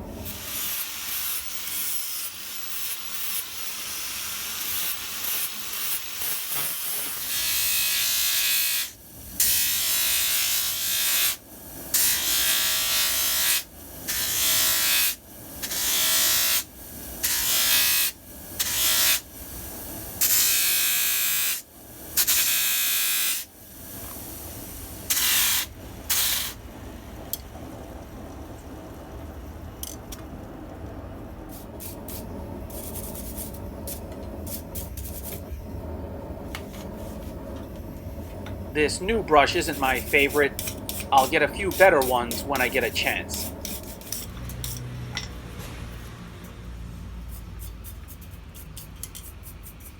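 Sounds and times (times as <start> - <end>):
low steady hum: 25.8 - 45.4
wire brush scrubbing steel: 31.6 - 35.5, 38.8 - 44.9.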